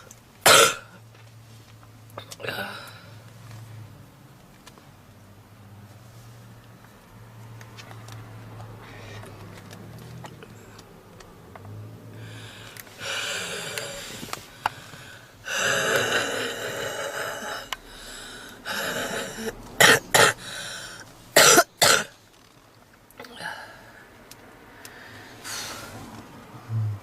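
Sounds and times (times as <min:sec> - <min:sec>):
woman coughing: 0:00.5 - 0:00.9, 0:19.8 - 0:20.4, 0:21.4 - 0:22.1.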